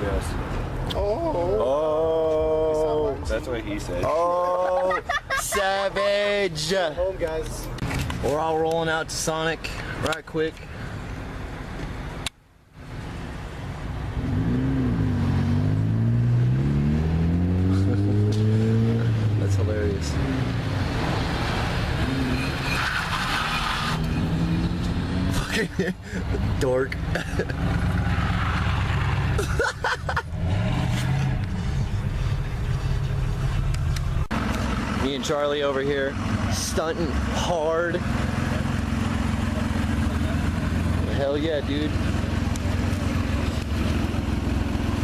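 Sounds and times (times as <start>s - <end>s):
voices: 0.0s - 10.6s, 34.7s - 43.7s
car engine accelerating: 14.1s - 25.6s, 30.0s - 45.0s.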